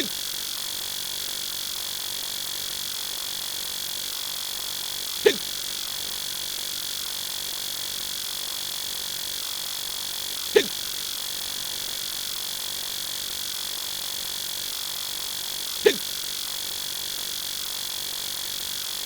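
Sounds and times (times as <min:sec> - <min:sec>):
man hiccuping: 0:05.2 - 0:05.6, 0:10.6 - 0:10.8, 0:15.8 - 0:16.1.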